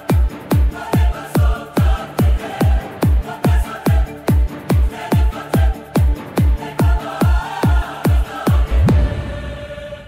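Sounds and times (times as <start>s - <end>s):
heavy kick drum: 8.5s - 9.4s.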